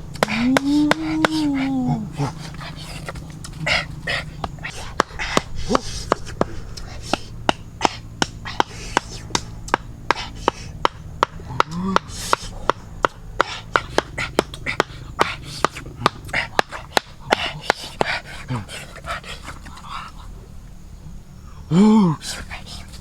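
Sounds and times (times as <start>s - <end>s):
sharp chopping strikes: 4.4s - 18.2s.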